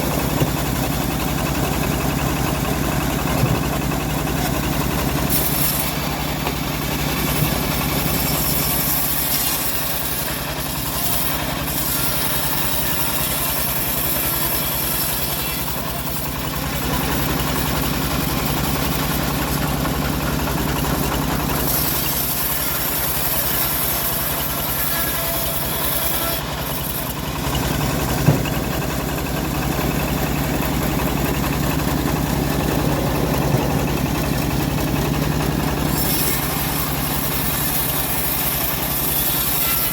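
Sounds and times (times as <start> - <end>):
sawmill engine running: 0.0 - 39.9
sharp knock: 28.2 - 28.8
high saw hiss: 33.4 - 39.9.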